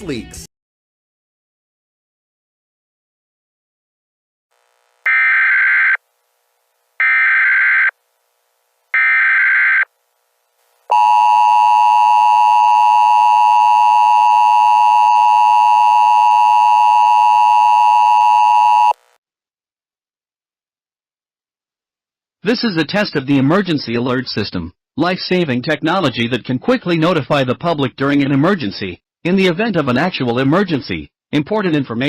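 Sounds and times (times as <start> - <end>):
buzzy data tone bursts: 4.6 - 6.0.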